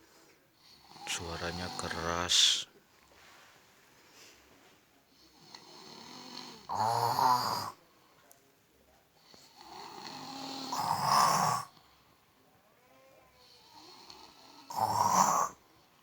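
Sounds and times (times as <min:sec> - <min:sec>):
child snoring loudly: 0:05.4 - 0:07.8, 0:09.6 - 0:11.8, 0:13.4 - 0:15.6.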